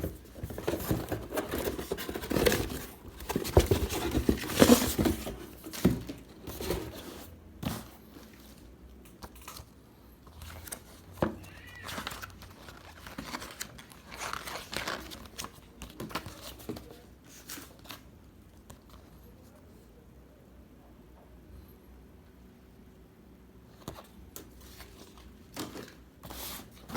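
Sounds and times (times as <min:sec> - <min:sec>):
packaging crinkling: 0:10.5 - 0:16.5.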